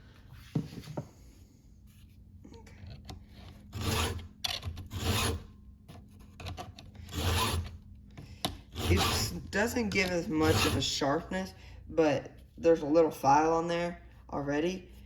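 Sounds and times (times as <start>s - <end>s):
file rasping on saw chain: 3.7s - 4.3s, 4.9s - 5.5s, 7.1s - 7.8s, 8.7s - 9.5s, 10.3s - 11.0s.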